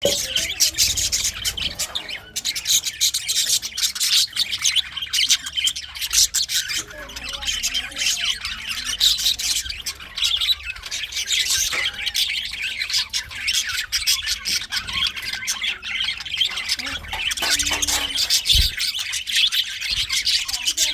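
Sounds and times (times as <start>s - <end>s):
budgerigars chirping: 0.0s - 20.9s.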